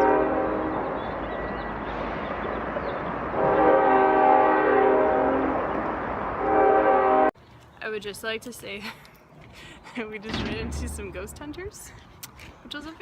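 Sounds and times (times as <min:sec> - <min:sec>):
train horn chord blasts: 0:00.0 - 0:01.2, 0:03.3 - 0:05.8, 0:06.4 - 0:07.3
passing train noise: 0:00.0 - 0:07.4.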